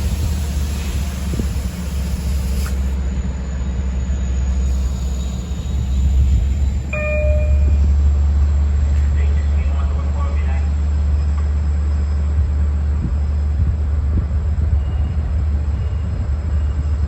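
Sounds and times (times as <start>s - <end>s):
locomotive diesel engine rumbling: 0.0s - 17.0s
short single-pitched tone: 6.9s - 8.1s.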